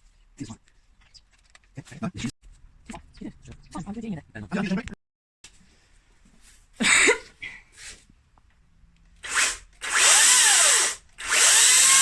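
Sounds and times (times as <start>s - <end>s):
cordless chainsaw winding up: 9.2s - 12.0s.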